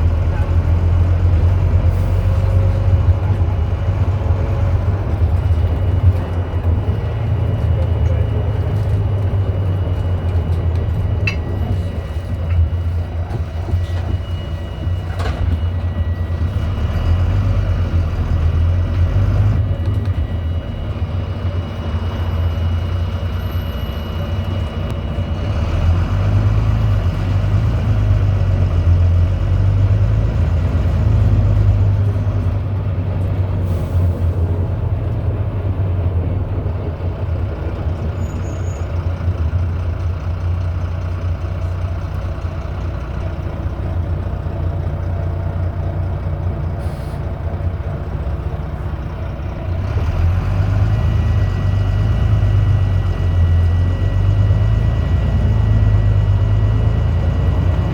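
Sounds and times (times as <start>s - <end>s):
bus diesel engine rumble: 0.0s - 57.9s
faint high beep: 12.8s - 17.2s.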